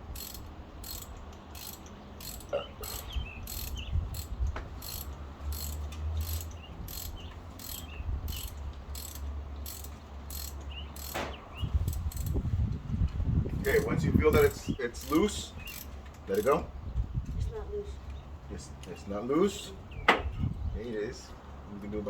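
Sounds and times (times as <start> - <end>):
rapid mechanical ticking: 0.0 - 11.2, 11.8 - 12.4, 15.0 - 16.6.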